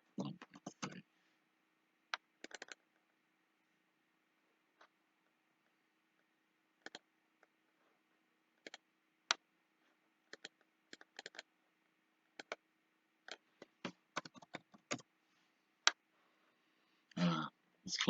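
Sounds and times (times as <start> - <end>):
faint steady hum: 0.0 - 18.0
mouse and keyboard clicks: 2.1 - 2.8, 6.8 - 7.0, 10.3 - 11.5, 12.4 - 12.6, 13.3 - 15.0.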